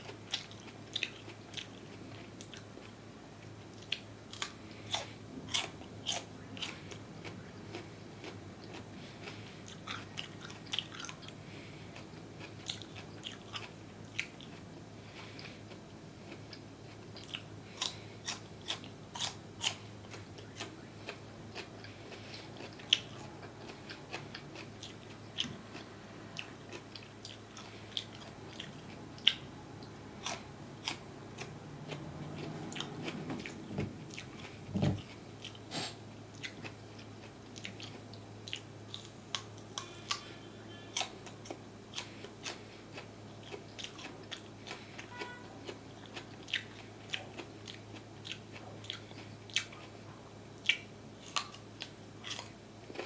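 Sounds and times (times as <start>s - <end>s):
person chewing crunchy food: 0.0s - 53.0s.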